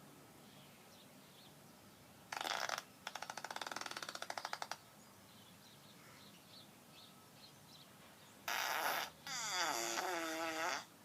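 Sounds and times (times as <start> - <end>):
fart: 2.3 - 4.7, 8.5 - 10.9.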